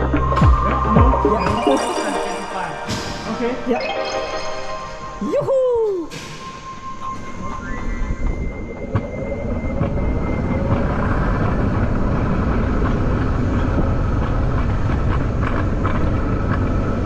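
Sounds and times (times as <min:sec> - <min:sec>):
sled wheels rumbling on rails: 0:08.3 - 0:17.0.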